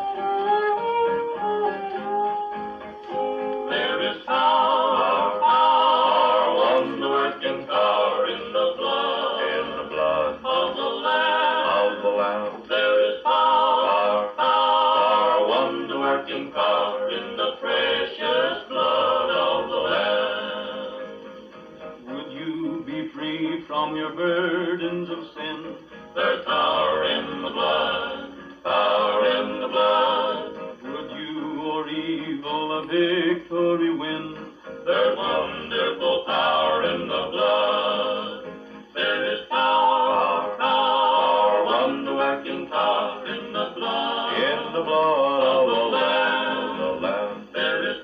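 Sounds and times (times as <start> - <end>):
plucked guitar: 0.0 - 8.6
country gospel record: 0.0 - 48.0.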